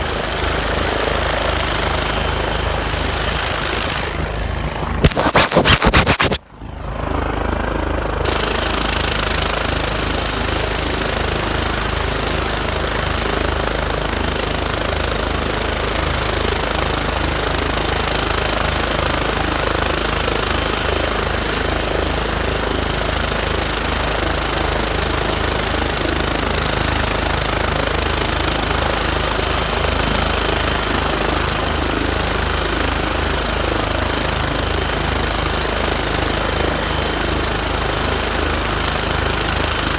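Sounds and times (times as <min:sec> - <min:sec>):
helicopter rotor and turbine: 0:00.0 - 0:39.9
loud crackle: 0:05.0 - 0:06.4.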